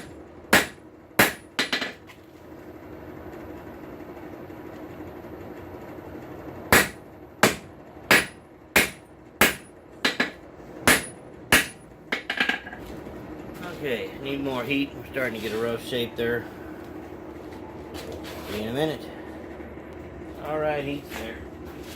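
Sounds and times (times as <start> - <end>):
hammer striking steel on anvil: 0.0 - 2.0, 6.7 - 12.8.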